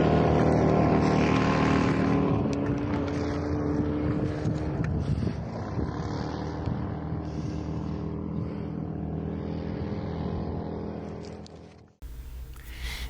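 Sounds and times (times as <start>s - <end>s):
motor running: 12.0s - 13.0s.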